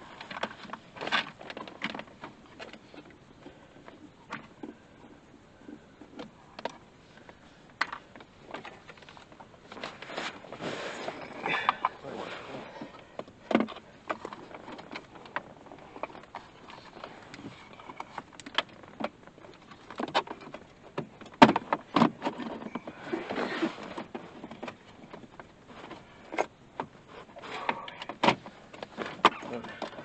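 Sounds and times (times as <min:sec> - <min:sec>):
short rustle: 0:08.3 - 0:18.9, 0:22.6 - 0:26.4.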